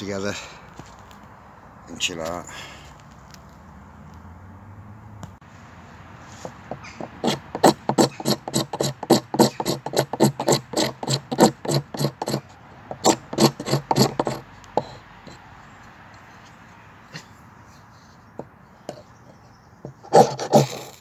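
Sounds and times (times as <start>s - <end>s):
hand saw cutting wood: 6.5s - 15.4s, 19.9s - 21.0s.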